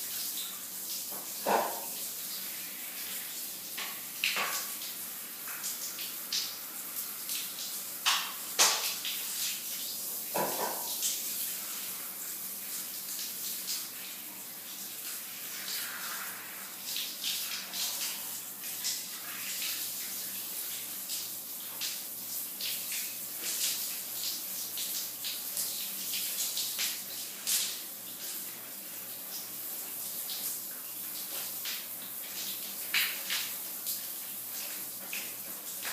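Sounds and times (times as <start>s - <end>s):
shower water spattering: 0.0s - 14.0s, 14.9s - 28.5s.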